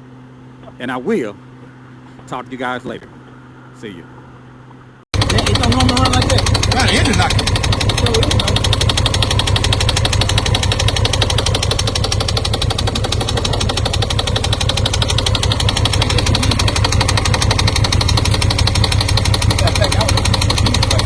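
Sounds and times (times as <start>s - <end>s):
motorcycle engine knocking: 5.2s - 21.0s.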